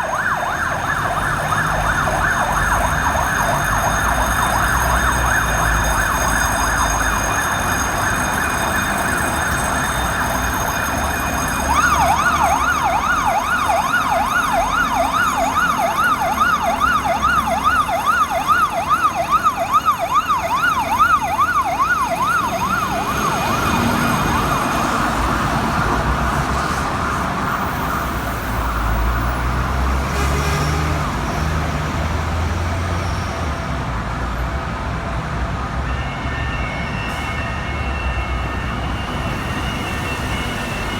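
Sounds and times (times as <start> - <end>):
engine and traffic rumble: 0.0 - 40.9
fire engine sirens: 0.0 - 40.9.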